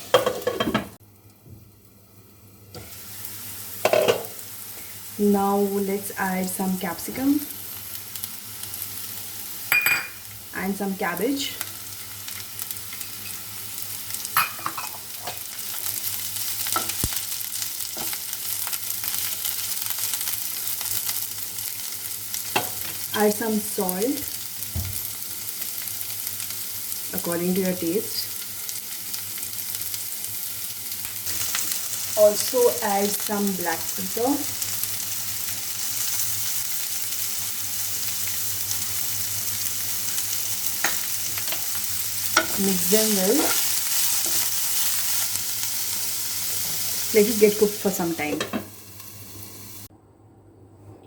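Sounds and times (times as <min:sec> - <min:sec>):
vegetables sizzling in hot oil: 0:00.0 - 0:49.9.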